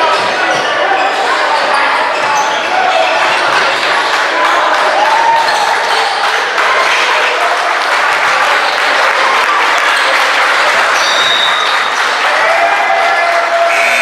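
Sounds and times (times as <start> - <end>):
crowd cheering and calling out: 0.0 - 14.0
crowd clapping: 3.0 - 14.0.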